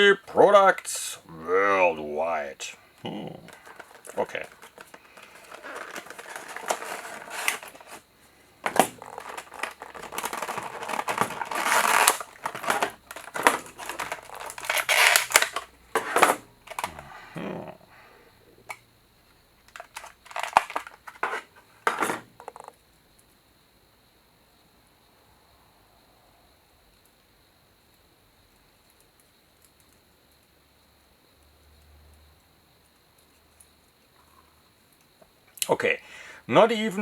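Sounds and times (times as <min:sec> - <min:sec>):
packaging rustling and crinkling: 0:03.5 - 0:17.1, 0:19.7 - 0:22.7.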